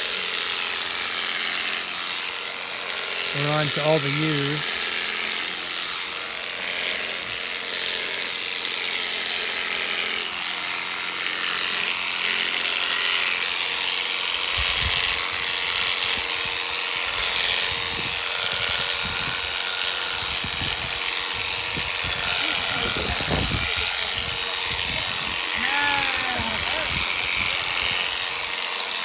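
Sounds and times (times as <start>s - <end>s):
electric shears buzzing: 0.0s - 29.0s.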